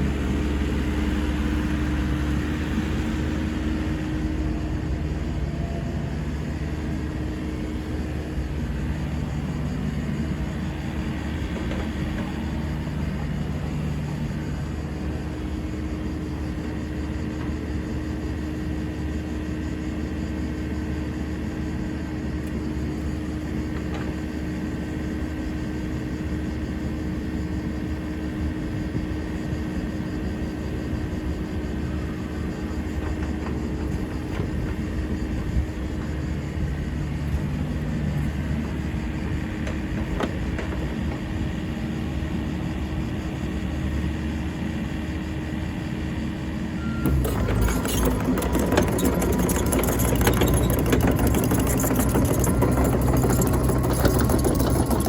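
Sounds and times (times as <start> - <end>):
diesel engine humming: 0.0 - 15.4, 46.6 - 55.0.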